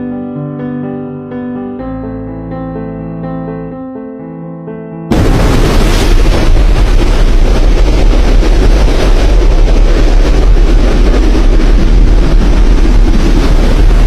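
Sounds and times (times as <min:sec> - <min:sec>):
floodwater rushing: 0:05.1 - 0:14.0.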